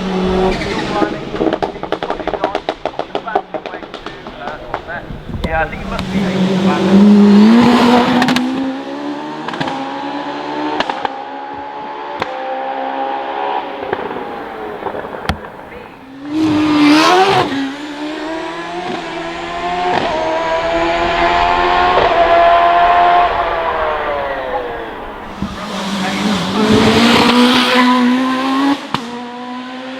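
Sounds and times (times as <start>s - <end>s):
car passing close: 0.0s - 29.9s
racing car engine revving: 0.0s - 29.9s
engine pops: 0.4s - 8.6s, 13.8s - 27.4s.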